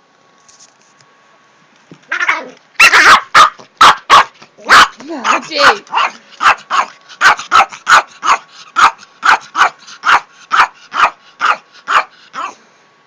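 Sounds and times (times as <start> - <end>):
small dog barking rapidly: 2.2 - 12.6.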